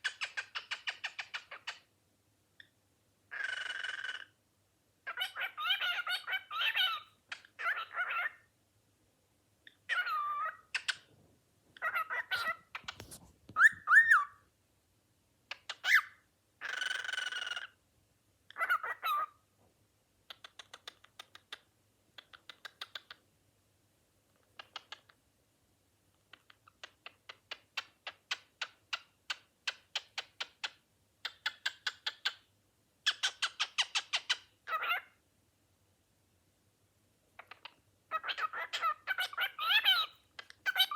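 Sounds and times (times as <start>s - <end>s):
cockatiel screeching: 3.3s - 4.3s, 5.1s - 8.4s, 9.9s - 10.9s, 11.8s - 14.4s, 15.8s - 17.7s, 18.6s - 19.3s, 33.2s - 35.1s, 38.1s - 40.9s
cockatiel whistling: 11.8s - 14.4s.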